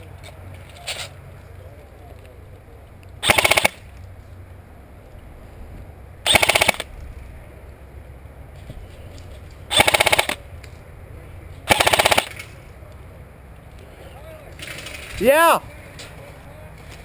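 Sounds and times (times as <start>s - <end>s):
airsoft gun full-auto bursts: 3.2s - 3.8s, 6.3s - 6.9s, 9.7s - 10.4s, 11.7s - 12.4s.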